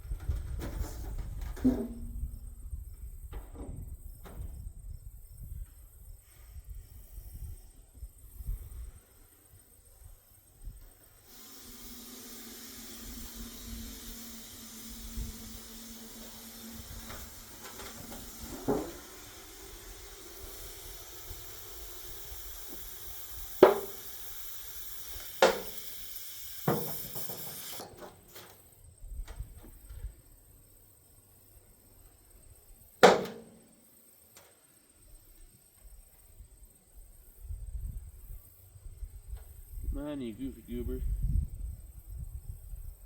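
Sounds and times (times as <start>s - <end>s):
gas hissing into can: 11.0s - 28.1s
sharp knocks: 23.6s - 24.0s, 25.4s - 25.8s, 26.7s - 28.1s, 33.0s - 33.6s.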